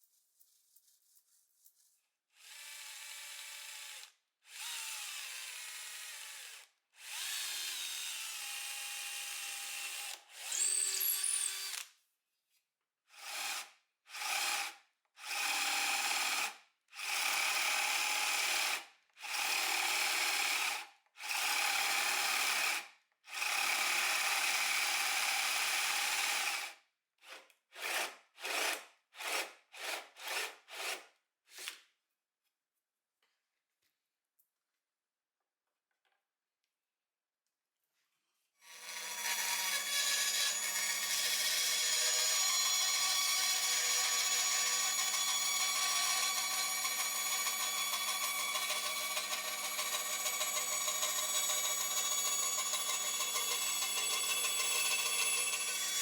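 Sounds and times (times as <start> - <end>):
electric hand drill running: 2.4 - 11.8, 13.2 - 26.8, 38.6 - 56.0.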